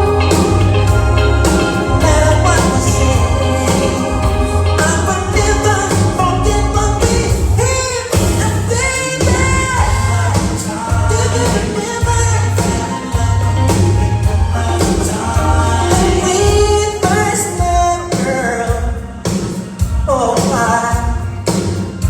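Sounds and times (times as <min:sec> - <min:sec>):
person singing long notes: 0:00.0 - 0:07.8
steady bass line: 0:00.0 - 0:17.2
live band playing pop song: 0:00.0 - 0:22.0.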